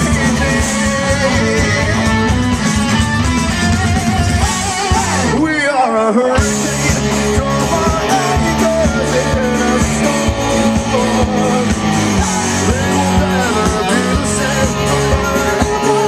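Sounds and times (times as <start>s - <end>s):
rock song with guitars and drums: 0.0s - 16.0s.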